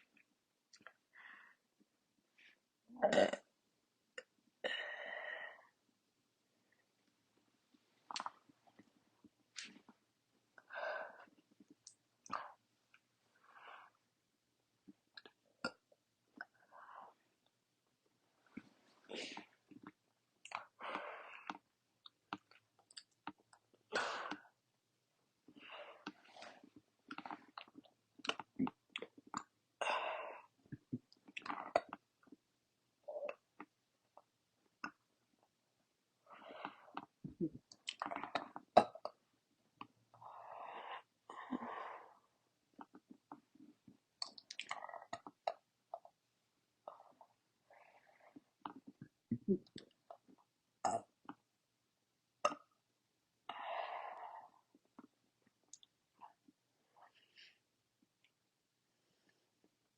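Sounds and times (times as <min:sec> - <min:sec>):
breathy burp burst: 0:03.0 - 0:03.5
wet mouth and throat noises: 0:08.1 - 0:08.8, 0:27.1 - 0:29.5, 0:30.7 - 0:32.4, 0:36.9 - 0:39.2, 0:44.2 - 0:46.2.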